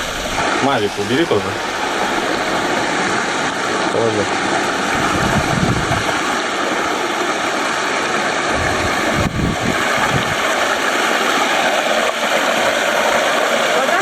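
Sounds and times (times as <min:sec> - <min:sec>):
low rumbles: 0:00.0 - 0:06.3, 0:08.5 - 0:10.6
stream water rushing: 0:00.0 - 0:14.0.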